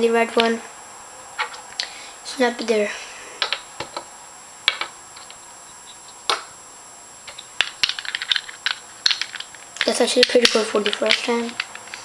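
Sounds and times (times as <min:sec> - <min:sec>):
plastic pieces clicking: 0:07.3 - 0:12.0.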